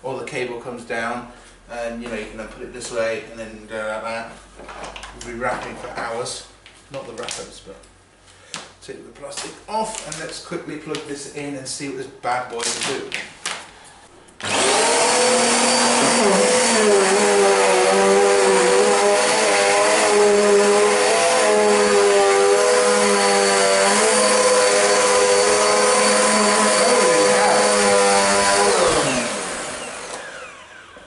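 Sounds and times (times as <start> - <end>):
vacuum cleaner motor whine: 14.4 - 31.0.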